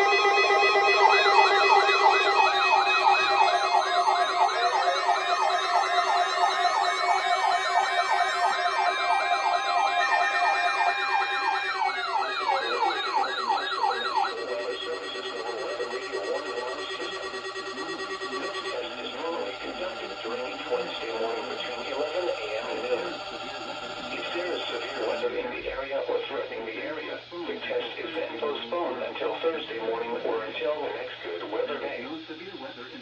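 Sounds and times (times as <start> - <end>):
fast yelping siren warble: 0.0 - 25.2
rising and falling siren wails: 0.0 - 25.2
steady alarm tones: 0.0 - 25.4.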